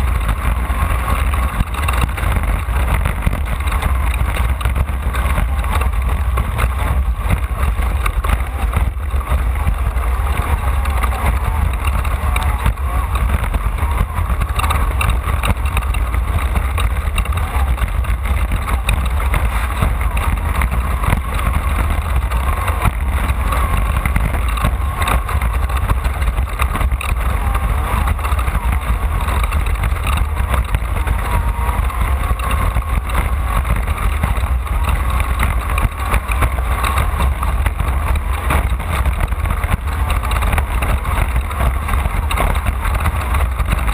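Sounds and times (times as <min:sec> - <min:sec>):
heavy low rumble: 0:00.0 - 0:43.9
race car engine: 0:00.0 - 0:43.9.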